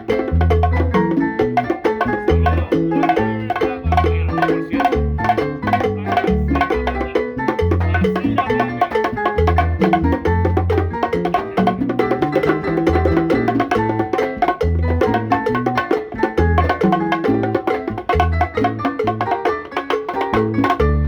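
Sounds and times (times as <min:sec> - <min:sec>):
held low bass notes: 0:00.0 - 0:14.0
quick melodic notes: 0:00.0 - 0:15.8
percussion hits: 0:00.0 - 0:21.0.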